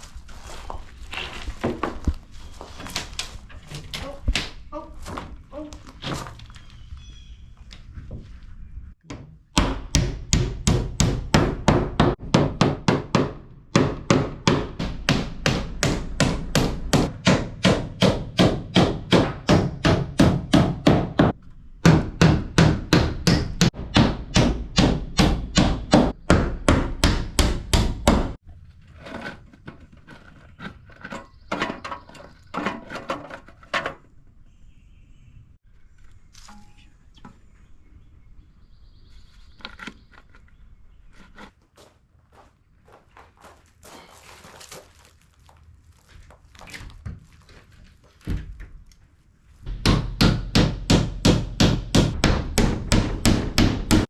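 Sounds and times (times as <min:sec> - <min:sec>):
hammer driving nails into plywood: 0:49.7 - 0:54.0.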